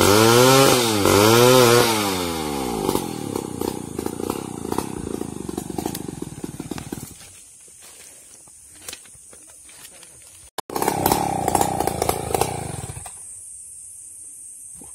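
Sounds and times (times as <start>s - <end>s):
chainsaw running: 0.0s - 7.3s, 10.6s - 13.2s.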